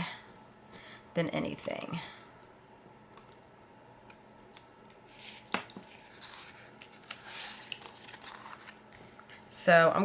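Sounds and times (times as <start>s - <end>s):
paper rustling: 5.1s - 9.4s.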